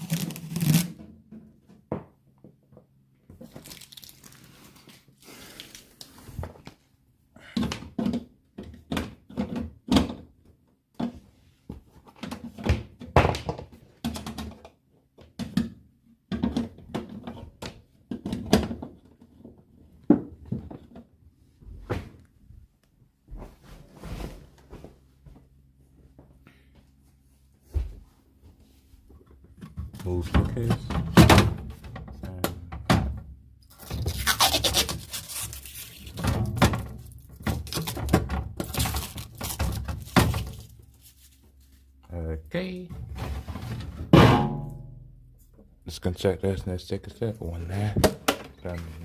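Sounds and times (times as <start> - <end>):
film peeling and crinkling: 0.0 - 0.9, 3.4 - 6.2, 33.7 - 41.7
knocks of plastic shelves and bins: 12.1 - 19.1, 29.5 - 33.3, 42.9 - 44.8.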